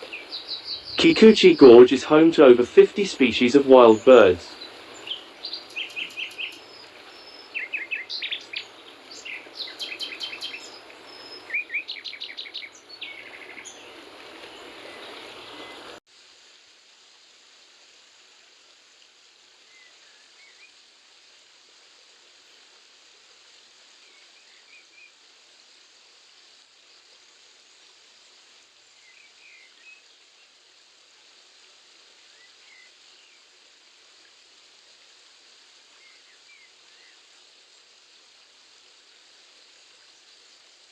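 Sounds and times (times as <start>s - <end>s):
songbirds chirping: 0.0s - 16.0s
stream water rushing: 0.0s - 16.0s.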